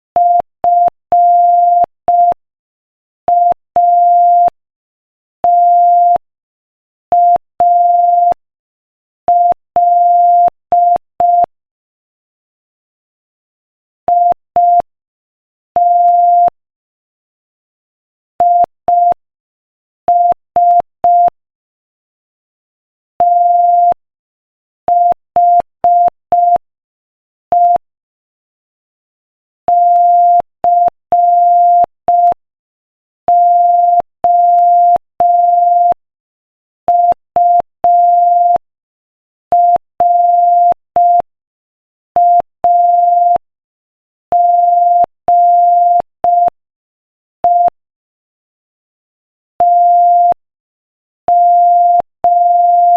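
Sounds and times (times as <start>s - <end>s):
morse code tone: 39.5s - 41.3s, 42.2s - 43.4s, 44.3s - 46.6s, 49.6s - 50.4s, 51.3s - 52.9s.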